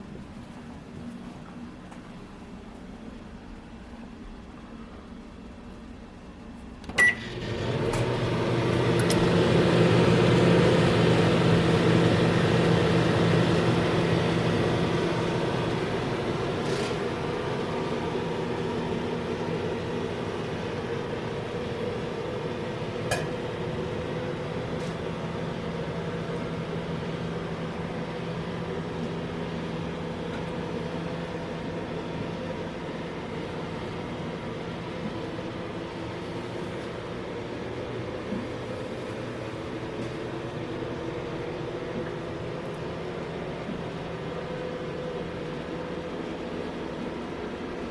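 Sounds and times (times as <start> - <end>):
microwave oven humming: 0.0 - 47.9
microwave oven click: 6.8 - 17.4, 23.0 - 23.9.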